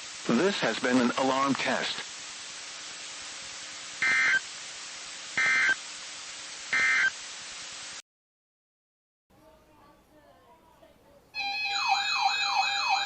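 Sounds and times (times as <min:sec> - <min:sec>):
radio static hiss: 0:00.0 - 0:08.0
digital data tone bursts: 0:04.0 - 0:04.5, 0:05.4 - 0:05.8, 0:06.8 - 0:07.2.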